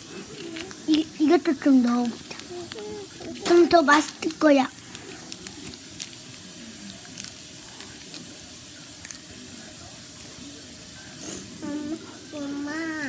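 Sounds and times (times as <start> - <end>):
steady background hiss: 0.0 - 13.0
child's voice: 0.2 - 4.8, 11.6 - 13.0.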